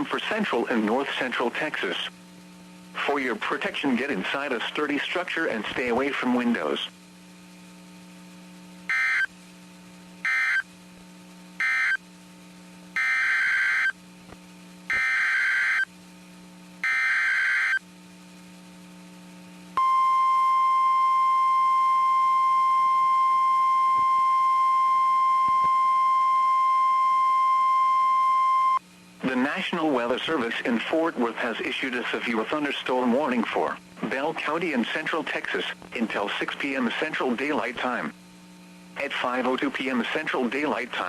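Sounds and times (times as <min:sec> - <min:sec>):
low hum: 0:00.6 - 0:31.6
data bursts: 0:13.0 - 0:13.9.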